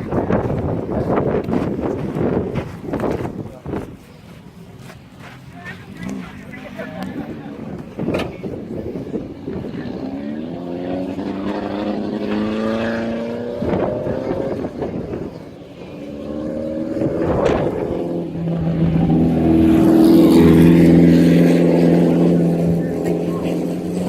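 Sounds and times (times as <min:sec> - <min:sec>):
race car engine revving: 0:04.8 - 0:24.0.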